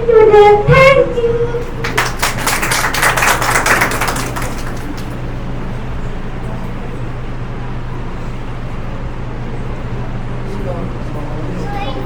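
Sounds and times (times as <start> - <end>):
low electrical hum: 0.0 - 12.0
people clapping: 1.6 - 5.5.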